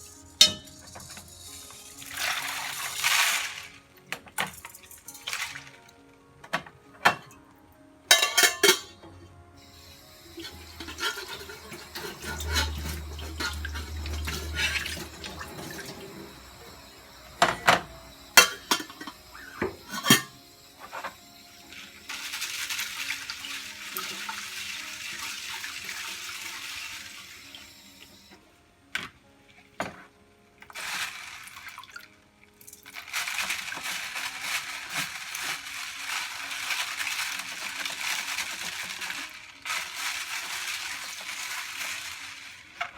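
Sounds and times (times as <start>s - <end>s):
knocks and clinks of items handled: 0.0s - 3.3s, 4.1s - 7.4s, 8.1s - 9.4s, 10.4s - 21.2s.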